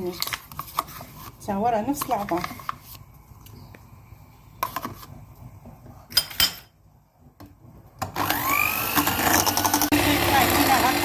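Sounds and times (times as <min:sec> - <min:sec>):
electric mixer whining: 0:08.0 - 0:11.0.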